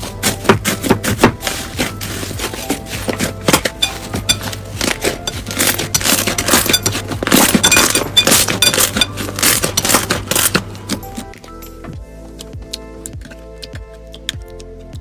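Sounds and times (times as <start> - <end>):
crunchy slime crackling: 0.0 - 11.3
background music: 0.0 - 15.0.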